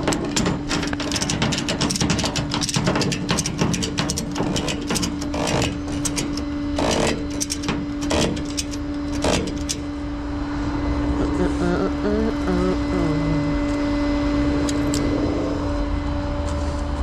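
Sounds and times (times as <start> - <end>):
sharp knocks and clanks: 0.0 - 9.9
vehicle engine humming: 3.7 - 17.0.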